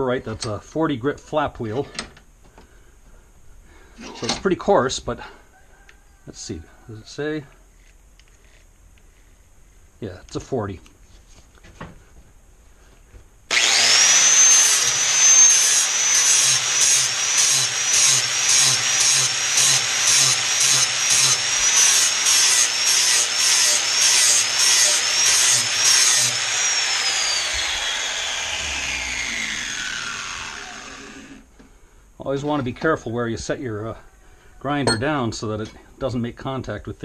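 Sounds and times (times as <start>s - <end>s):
angle grinder whining: 13.5s - 31.5s.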